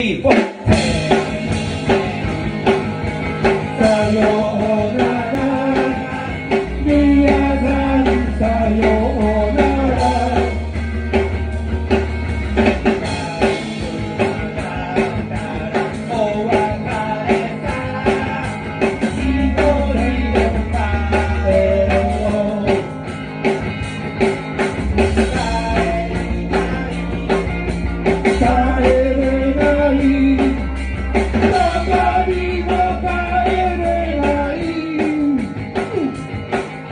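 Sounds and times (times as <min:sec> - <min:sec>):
drum kit beat: 0:00.0 - 0:36.9
guitar: 0:00.0 - 0:36.9
person singing: 0:03.5 - 0:10.7, 0:12.9 - 0:22.9, 0:25.2 - 0:30.7, 0:31.4 - 0:36.9.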